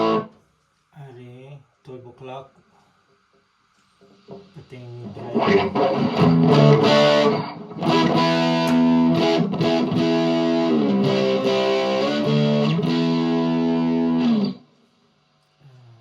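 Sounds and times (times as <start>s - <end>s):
distorted electric guitar chords: 0.0s - 0.3s, 4.3s - 14.7s.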